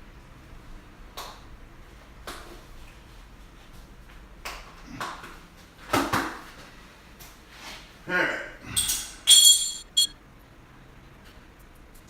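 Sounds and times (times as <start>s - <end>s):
hand tools and steel parts clinking: 8.8s - 10.1s.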